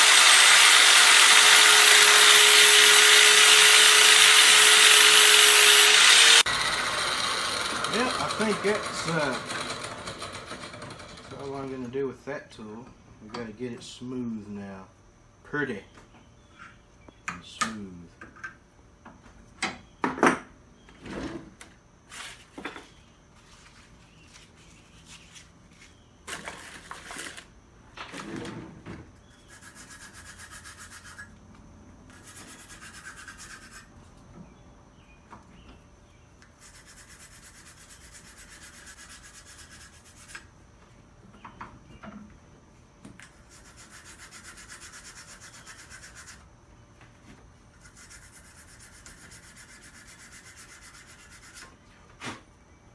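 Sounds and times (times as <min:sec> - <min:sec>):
abrasive tool smoothing metal: 0:00.0 - 0:11.7, 0:43.5 - 0:46.4, 0:47.8 - 0:51.6.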